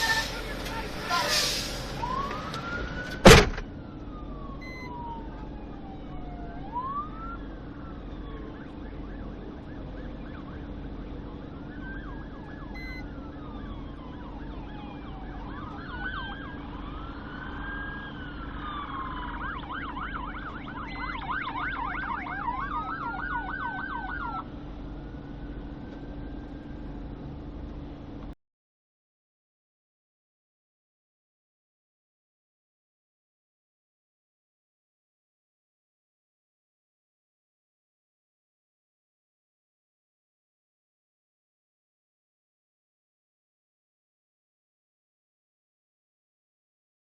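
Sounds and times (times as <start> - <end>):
yelp siren: 0.0 - 27.2
wailing sirens: 0.0 - 28.2
steady low hum: 1.7 - 28.4.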